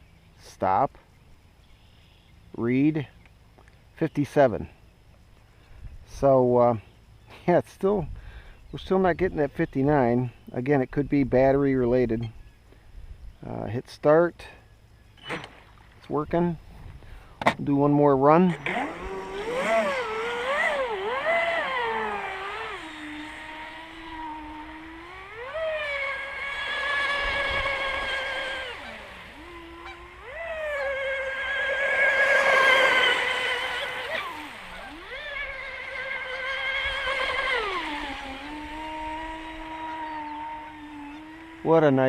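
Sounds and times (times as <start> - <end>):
rc boat motor whining: 18.1 - 42.0
water rushing hiss: 18.6 - 42.0.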